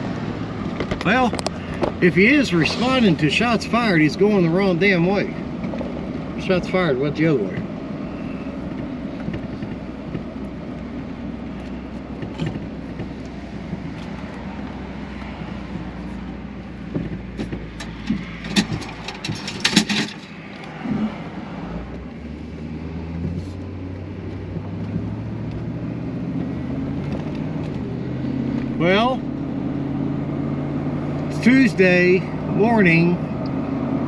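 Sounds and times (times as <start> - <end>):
engine and road noise: 0.0 - 34.0
sharp clicks and rattles: 11.6 - 15.9, 16.8 - 20.9.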